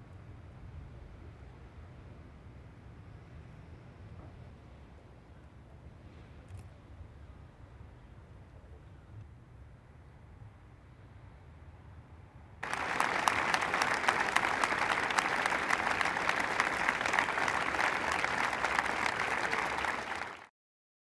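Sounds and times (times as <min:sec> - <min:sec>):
crowd applauding: 0:12.6 - 0:20.5.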